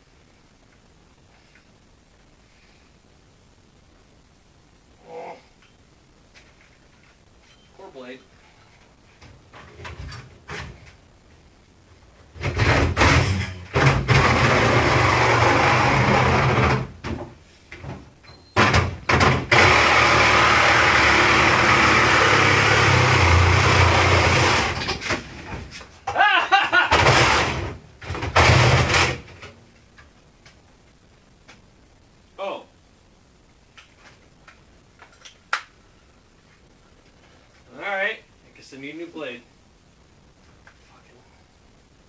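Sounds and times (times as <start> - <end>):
power saw cutting sheet metal: 12.4 - 16.9, 19.2 - 24.9.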